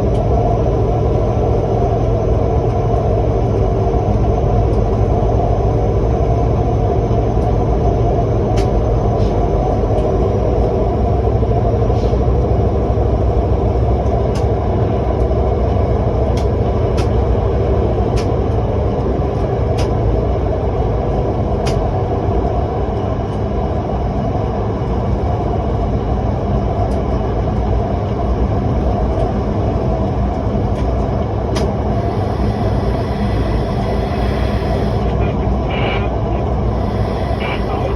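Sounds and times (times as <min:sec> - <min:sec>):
electric train rumbling: 0:00.0 - 0:37.9
faint steady whine: 0:31.8 - 0:37.9.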